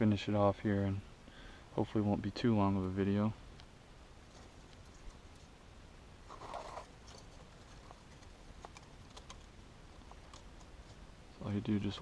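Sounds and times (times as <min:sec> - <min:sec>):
sticks rustling: 0:06.2 - 0:11.1
dry sticks clicking and scraping: 0:06.3 - 0:11.1.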